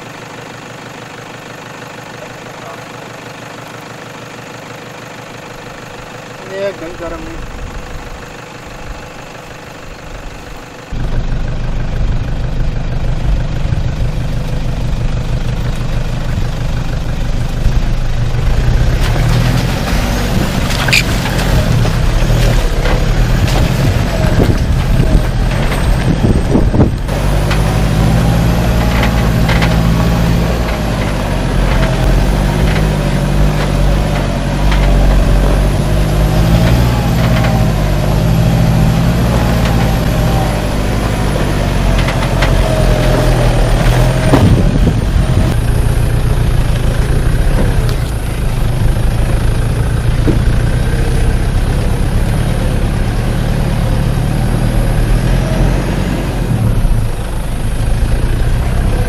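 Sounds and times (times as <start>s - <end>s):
vehicle engine at low revs: 0.0s - 59.0s
vehicle knocking over rocks: 17.6s - 52.4s.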